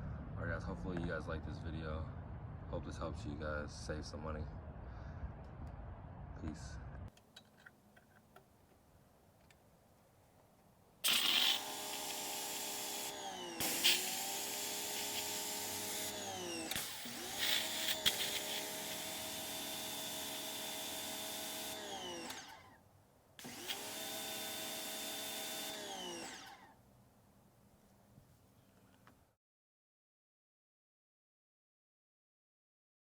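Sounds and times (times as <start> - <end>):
pressure washer running: 11.0 - 22.7, 23.4 - 26.7.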